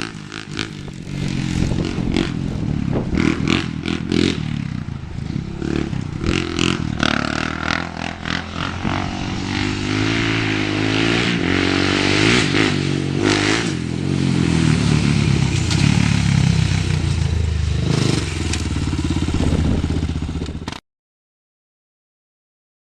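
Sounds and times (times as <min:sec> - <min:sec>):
quad engine revving: 0:00.0 - 0:20.8.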